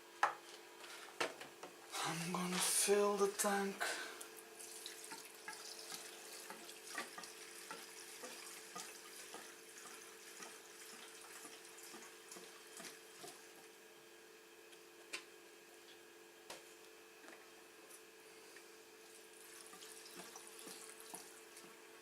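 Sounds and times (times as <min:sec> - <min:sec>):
fuel trickling into tank: 0:04.2 - 0:13.4.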